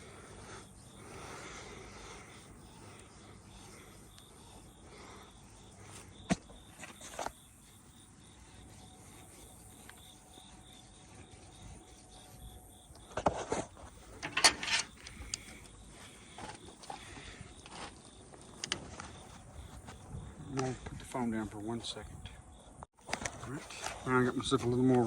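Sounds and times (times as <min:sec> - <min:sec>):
metal knocks and scrapes: 0:13.2 - 0:15.2
metal clatter: 0:14.2 - 0:15.1.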